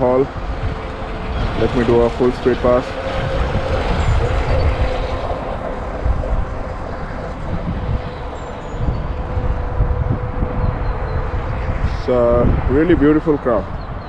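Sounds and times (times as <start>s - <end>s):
low rumble: 0.3s - 12.8s.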